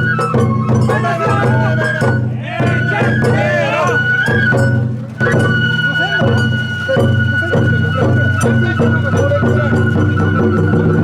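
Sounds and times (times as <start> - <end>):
drum beats: 0.0 - 11.0
bamboo flute long high note: 0.7 - 4.6
people's voices: 0.8 - 4.2.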